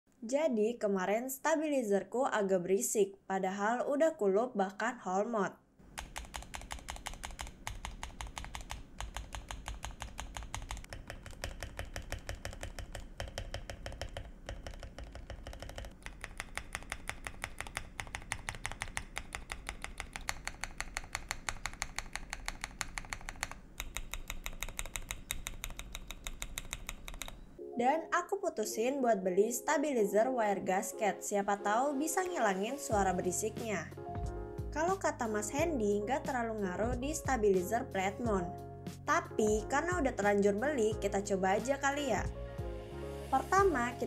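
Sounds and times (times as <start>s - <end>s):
fast mechanical keyboard typing: 5.9s - 27.4s.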